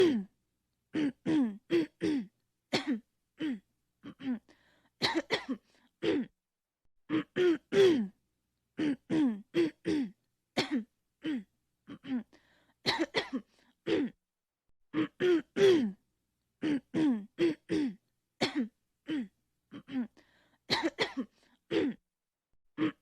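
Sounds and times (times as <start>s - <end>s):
woman clearing her throat: 1.0s - 6.3s, 7.1s - 8.2s, 8.8s - 12.3s, 12.9s - 14.2s, 14.9s - 16.0s, 16.6s - 22.0s, 22.8s - 23.0s.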